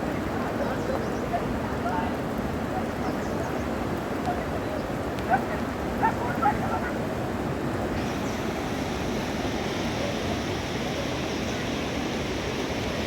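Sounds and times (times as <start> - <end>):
heavy rain pouring: 7.7 - 13.0.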